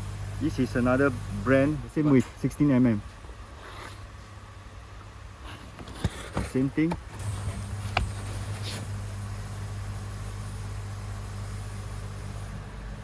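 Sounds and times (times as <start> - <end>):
low machine hum: 0.0 - 3.5, 7.0 - 13.0.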